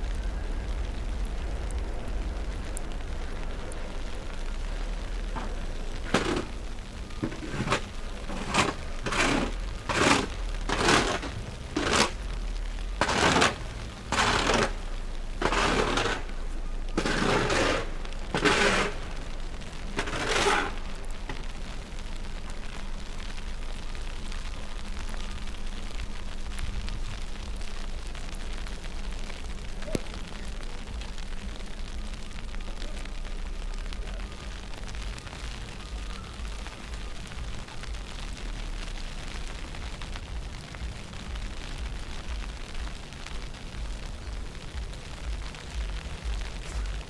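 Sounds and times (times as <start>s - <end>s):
low rumble: 0.0s - 47.0s
footsteps crunching in snow: 4.3s - 21.7s.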